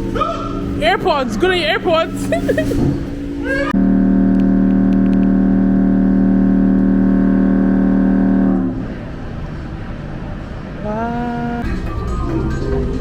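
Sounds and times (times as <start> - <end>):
low horn-like tone: 3.8 - 9.1.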